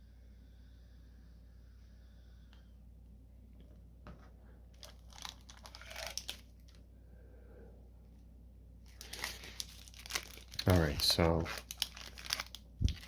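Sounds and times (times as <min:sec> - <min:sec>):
plastic packaging crinkling and tearing: 0:04.8 - 0:06.8, 0:08.9 - 0:13.0.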